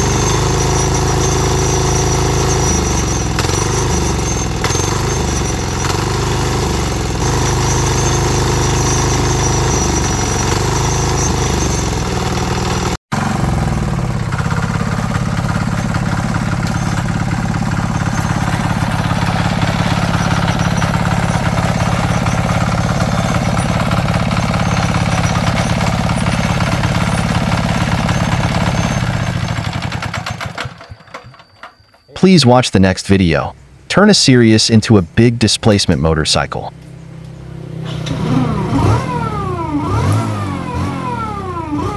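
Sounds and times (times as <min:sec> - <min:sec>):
small diesel engine running: 0:00.0 - 0:32.2, 0:35.0 - 0:41.9.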